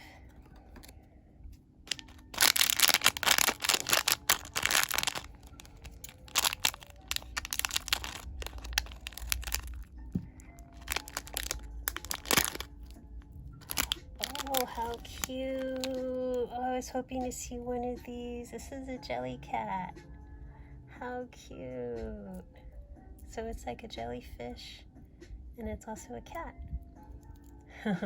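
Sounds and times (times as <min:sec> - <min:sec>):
packaging crinkling and tearing: 0:01.9 - 0:09.9, 0:10.7 - 0:12.9, 0:13.6 - 0:16.0.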